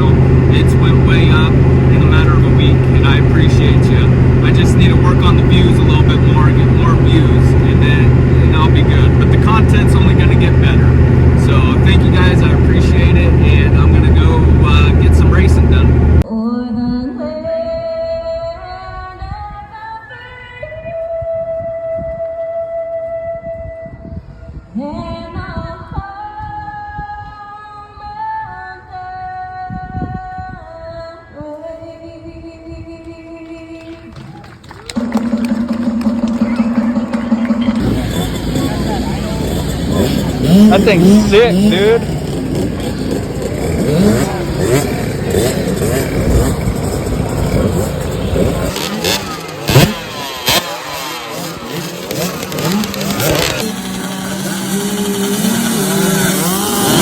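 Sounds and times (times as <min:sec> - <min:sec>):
dirt bike engines revving: 0:00.0 - 0:16.2, 0:33.4 - 0:57.0
low rumbling backing music: 0:00.0 - 0:16.9, 0:33.6 - 0:57.0.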